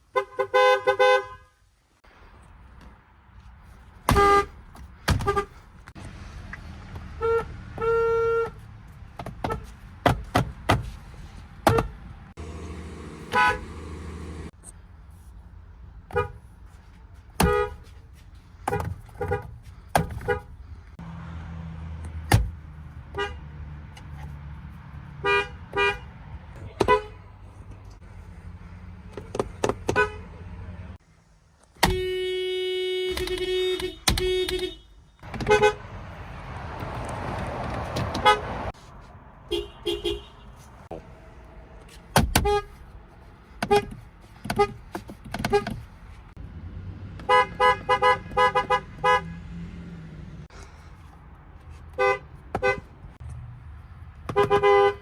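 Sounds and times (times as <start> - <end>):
street and engine noise: 0.0 - 55.0
car horns tooting: 0.1 - 1.5, 4.1 - 5.6, 7.2 - 8.6, 11.6 - 14.6, 17.4 - 17.9, 25.2 - 26.1, 26.7 - 27.2, 29.2 - 30.5, 31.8 - 36.0, 37.8 - 38.8, 39.5 - 40.7, 42.3 - 42.8, 43.6 - 44.8, 45.4 - 45.8, 47.2 - 49.6, 52.0 - 52.9, 54.3 - 55.0.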